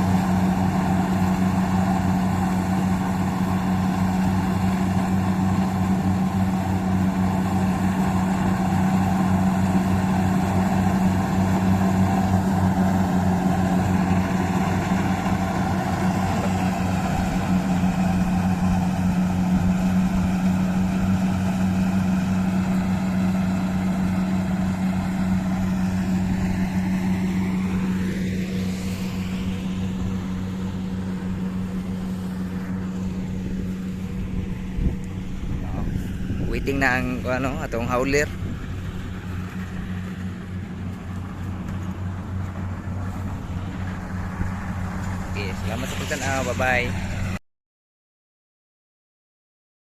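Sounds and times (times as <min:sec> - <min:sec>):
diesel engine running: 0:00.0 - 0:47.4
whine rising in pitch: 0:10.5 - 0:47.3.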